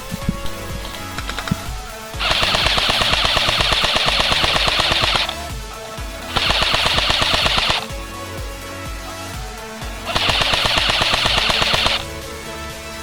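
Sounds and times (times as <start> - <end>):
airsoft rifle firing rapid clicks: 0.8 - 5.6, 6.2 - 7.9, 10.0 - 12.0.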